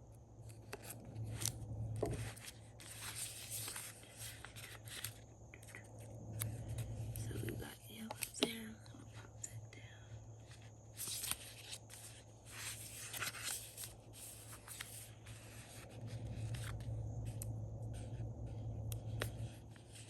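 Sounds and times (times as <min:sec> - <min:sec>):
steady low hum: 0:00.0 - 0:20.0
paper rustling and rubbing: 0:00.4 - 0:05.8, 0:10.5 - 0:20.0.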